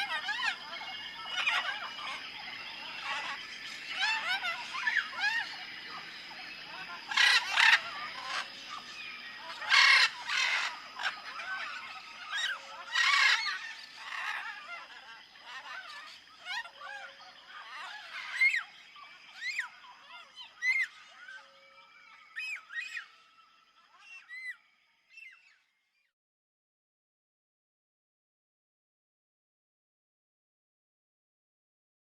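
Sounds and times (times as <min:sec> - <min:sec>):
high insect drone: 0:00.0 - 0:25.6
birds chirping and whistling: 0:00.0 - 0:26.1.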